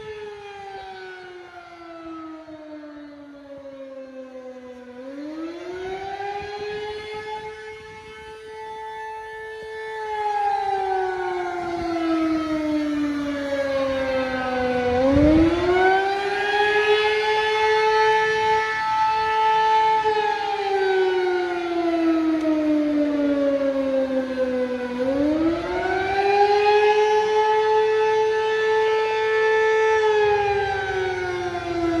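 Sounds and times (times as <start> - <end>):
warning siren wailing: 0.0 - 32.0.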